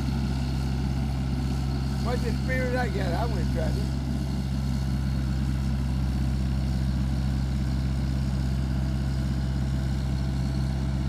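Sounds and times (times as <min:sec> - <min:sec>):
heavy equipment engine running: 0:00.0 - 0:11.0.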